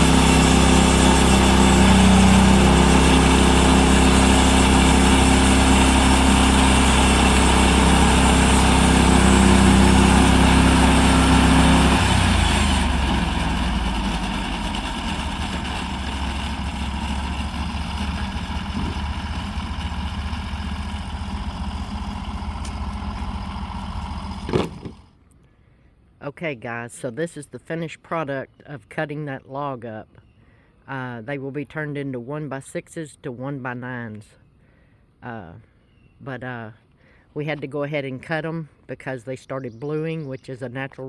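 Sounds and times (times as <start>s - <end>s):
small gasoline engine running: 0.0s - 25.1s.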